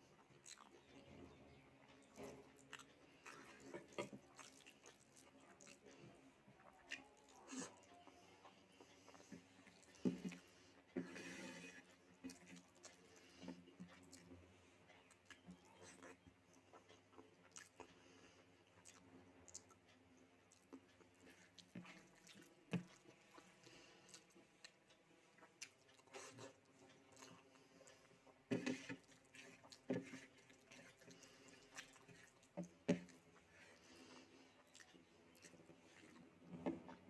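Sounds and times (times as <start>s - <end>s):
person chewing: 0.2s - 0.9s, 2.0s - 5.9s, 12.2s - 14.4s, 15.0s - 37.0s.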